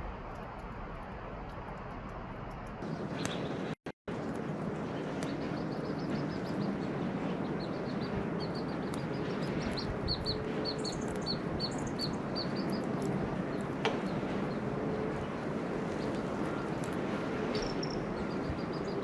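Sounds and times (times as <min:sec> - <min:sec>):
steady background noise: 0:00.0 - 0:19.0
bird chirping: 0:04.9 - 0:14.6, 0:17.6 - 0:19.0.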